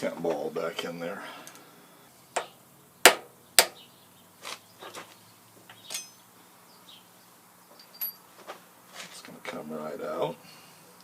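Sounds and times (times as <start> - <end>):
hand tools clinking on steel: 5.7 - 6.2, 7.8 - 8.3.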